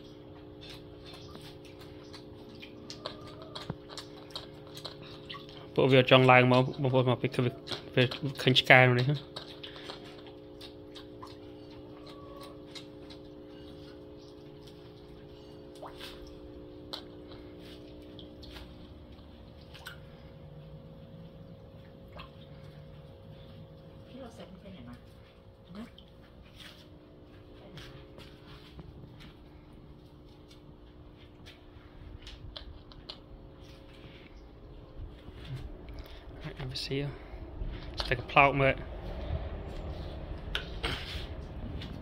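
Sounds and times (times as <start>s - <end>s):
water dripping: 0.0s - 26.4s
steady low hum: 0.0s - 42.0s.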